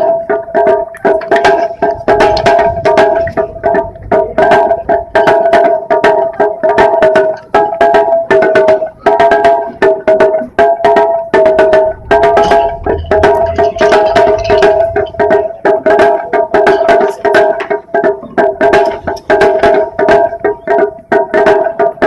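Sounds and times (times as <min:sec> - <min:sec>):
drum ensemble playing fast: 0:00.0 - 0:22.0
ringing tone: 0:10.9 - 0:17.6.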